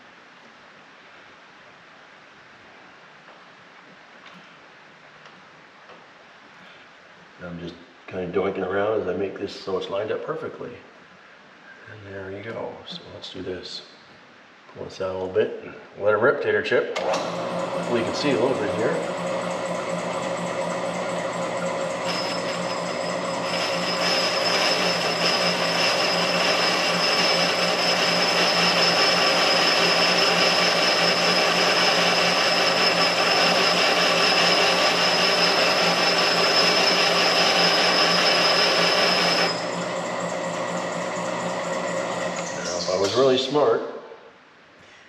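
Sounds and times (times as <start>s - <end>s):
machine running: 17.0s - 43.4s
high-pitched cutting squeal: 17.8s - 43.4s.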